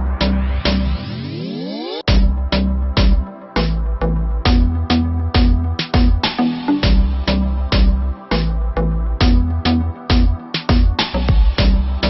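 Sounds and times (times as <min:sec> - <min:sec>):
electronic music with heavy bass: 0:00.0 - 0:12.0.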